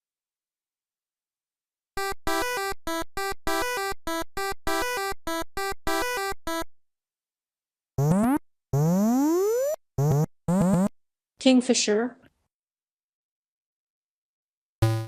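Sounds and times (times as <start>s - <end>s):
synthesizer beeping notes: 8.0s - 10.9s
synthesizer rising sweeps: 8.0s - 10.9s.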